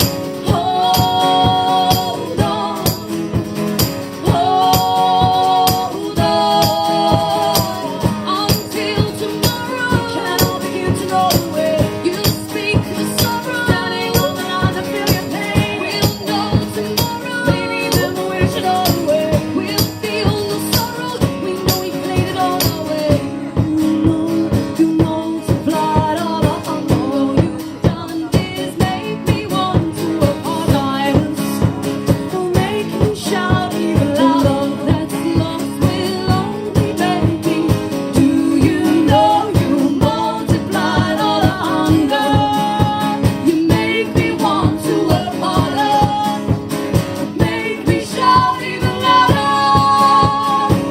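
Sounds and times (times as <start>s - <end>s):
person singing: 0.0s - 3.1s, 4.2s - 46.6s, 47.3s - 50.9s
guitar playing: 0.0s - 50.9s
live band music: 0.0s - 50.9s.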